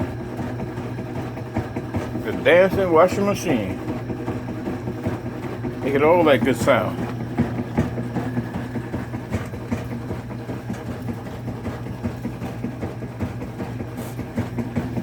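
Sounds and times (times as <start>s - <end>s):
washing machine knocking and rattling: 0.0s - 15.0s
washing machine motor hum: 0.0s - 15.0s.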